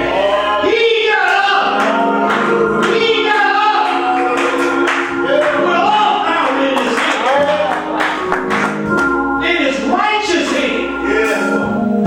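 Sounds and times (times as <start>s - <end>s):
gospel singing: 0.0s - 12.0s
instrumental accompaniment: 0.0s - 12.0s.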